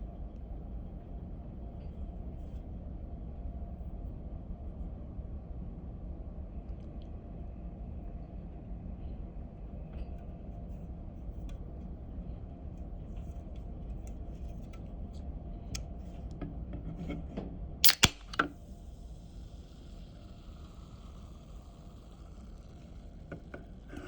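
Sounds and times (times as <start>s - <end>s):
can pull tab click: 17.8s - 18.6s.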